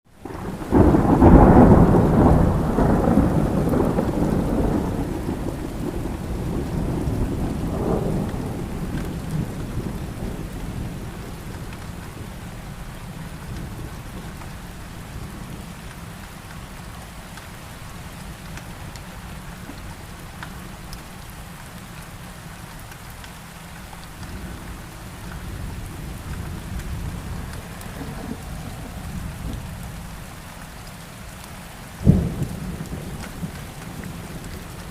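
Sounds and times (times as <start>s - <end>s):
steady rain: 0.1s - 34.9s
thunder: 0.2s - 12.4s, 24.2s - 30.3s, 32.0s - 34.9s.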